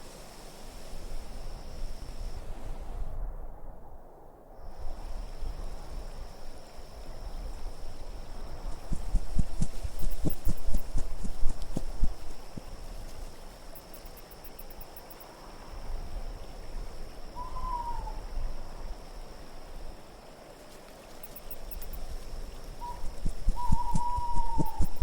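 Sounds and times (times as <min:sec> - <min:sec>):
wind gusting: 0:04.6 - 0:15.0, 0:21.4 - 0:25.0
owl hooting: 0:17.4 - 0:18.4, 0:22.8 - 0:25.0.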